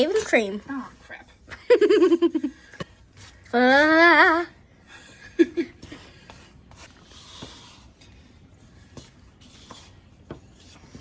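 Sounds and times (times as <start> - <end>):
utensil stirring in a bowl: 0.0 - 11.0
giggle-like vocal sound: 1.5 - 2.8, 5.2 - 5.8.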